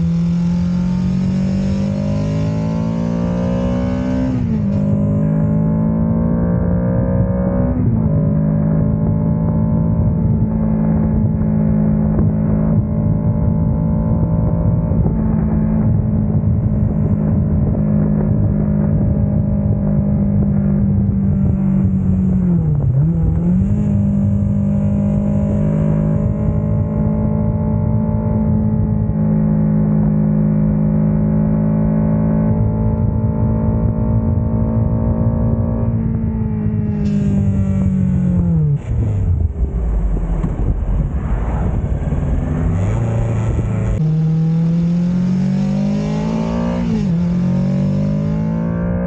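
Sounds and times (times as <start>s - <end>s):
motorcycle engine running: 0.0s - 49.0s.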